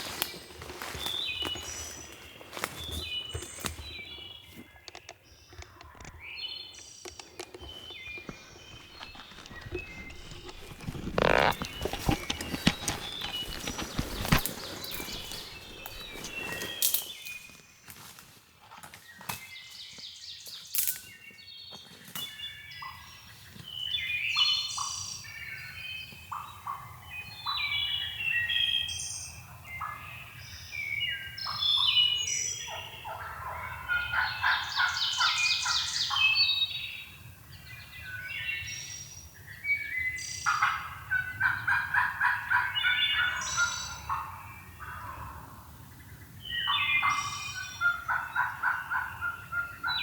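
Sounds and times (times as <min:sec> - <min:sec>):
songbird calls: 0:00.0 - 0:17.7, 0:22.2 - 0:50.0
turkeys gobbling: 0:40.5 - 0:45.5, 0:46.7 - 0:50.0.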